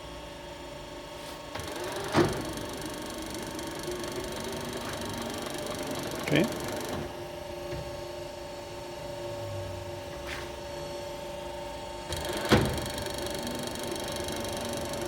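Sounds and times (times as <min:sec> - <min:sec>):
lathe whining: 0:01.6 - 0:07.2, 0:12.1 - 0:15.0.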